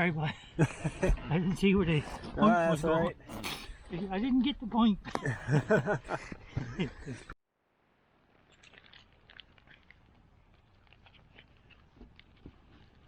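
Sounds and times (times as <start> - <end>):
voice: 1.0 - 5.0.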